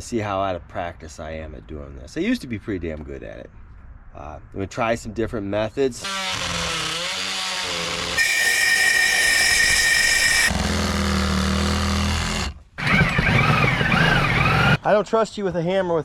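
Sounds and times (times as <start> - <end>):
motor hum: 6.0 - 14.8
power saw buzzing: 6.0 - 14.8
power saw whine: 6.0 - 14.8.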